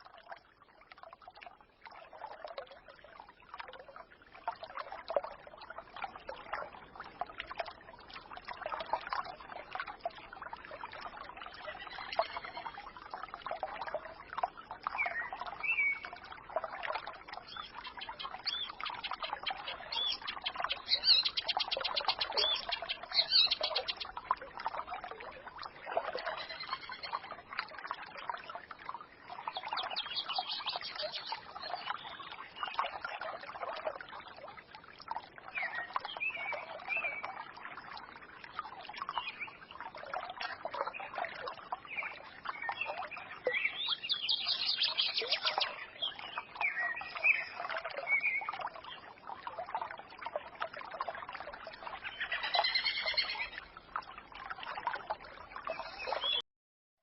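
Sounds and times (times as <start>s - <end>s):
stream babbling and trickling: 0.0s - 56.4s
songbirds chirping and trilling: 10.3s - 13.0s, 13.6s - 24.4s, 25.1s - 28.4s, 29.3s - 33.5s, 39.0s - 49.1s, 51.6s - 53.8s, 55.4s - 56.4s.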